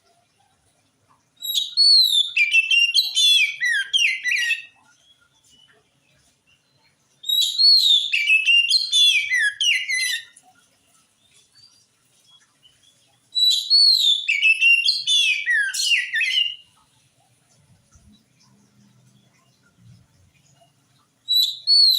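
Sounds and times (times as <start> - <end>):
bird singing whistled notes: 1.4 - 4.8, 7.2 - 10.3, 12.7 - 16.8, 21.3 - 21.9.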